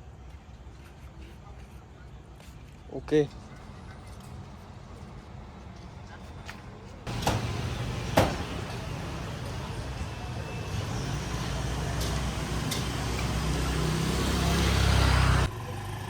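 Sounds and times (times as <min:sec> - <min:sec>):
traffic engine rumble: 0:03.6 - 0:16.0
tyre and road noise: 0:06.6 - 0:16.0.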